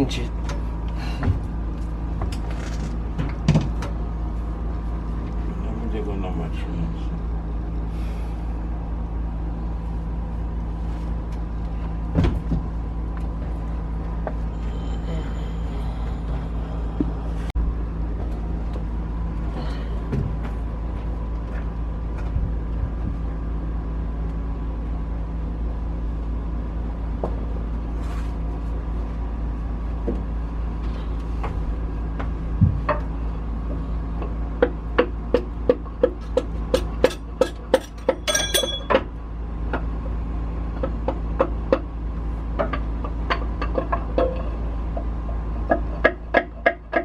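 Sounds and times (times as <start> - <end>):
low mechanical hum: 0.0 - 47.0
ringing metal clink: 38.1 - 39.0.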